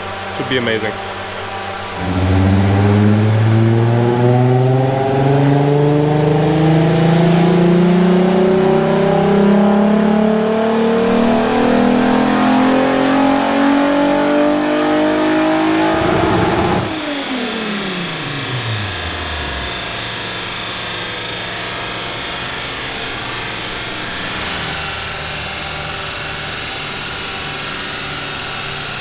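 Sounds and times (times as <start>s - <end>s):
car engine revving at full throttle: 0.0s - 29.0s.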